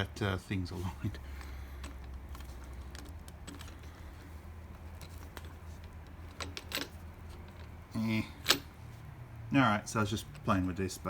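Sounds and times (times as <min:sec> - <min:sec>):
metal parts clicking: 0:01.1 - 0:08.8.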